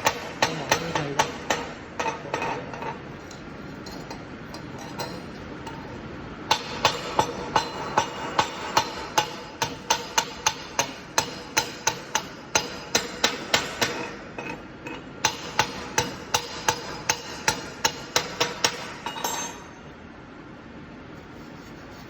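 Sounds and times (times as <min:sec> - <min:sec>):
hammer striking metal: 0:00.0 - 0:02.9, 0:06.5 - 0:14.2, 0:15.2 - 0:19.8
steady background hum: 0:00.0 - 0:22.0.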